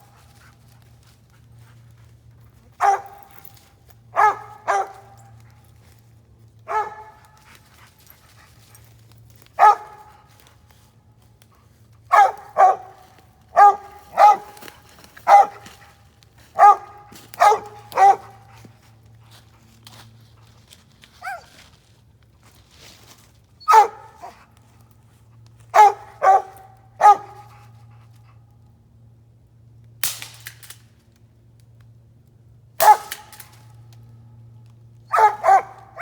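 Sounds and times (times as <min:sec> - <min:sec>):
dog barking: 0:02.8 - 0:03.3, 0:04.1 - 0:05.2, 0:06.7 - 0:07.2, 0:09.6 - 0:10.2, 0:12.1 - 0:14.6, 0:15.2 - 0:15.8, 0:16.6 - 0:18.4, 0:23.7 - 0:24.4, 0:25.7 - 0:27.6, 0:32.8 - 0:33.2, 0:35.1 - 0:36.0.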